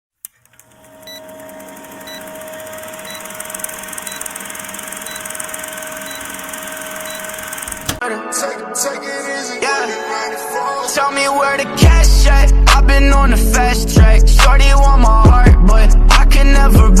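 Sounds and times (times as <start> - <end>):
electronic hum with held tones: 0.4 - 8.0.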